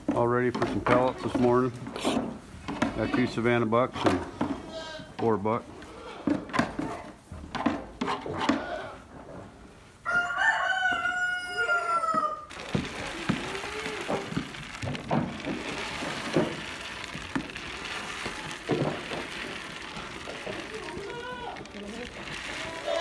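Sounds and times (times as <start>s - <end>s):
goat bleats: 4.6s - 5.1s, 8.4s - 9.0s
rooster crowing: 10.0s - 12.8s.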